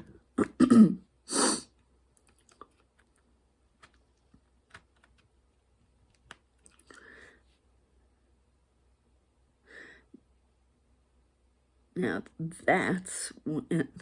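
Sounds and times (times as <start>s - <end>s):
faint handling clicks and taps: 2.1s - 6.9s
woman speaking quietly: 12.0s - 14.0s.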